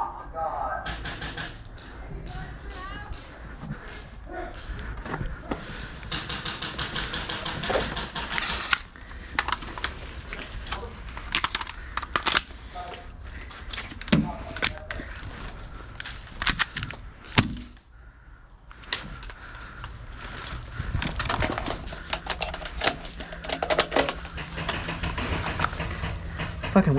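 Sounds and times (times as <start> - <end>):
airsoft guns firing: 0.8 - 2.0, 5.6 - 9.4, 21.9 - 26.9.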